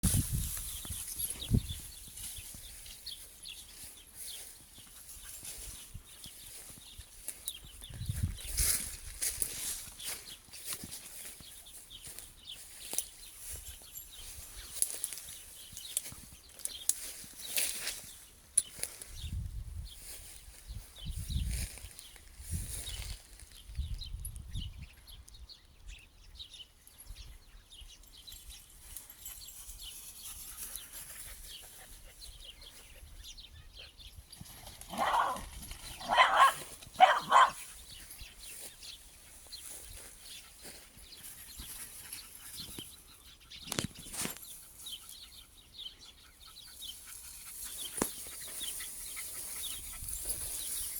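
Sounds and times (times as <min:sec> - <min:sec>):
dog barking: 0:34.9 - 0:37.6.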